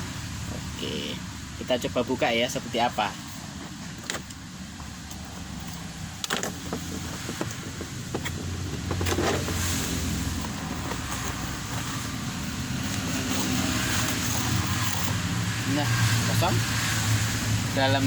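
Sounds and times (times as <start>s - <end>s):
cardboard and packaging rustling: 3.3s - 15.2s.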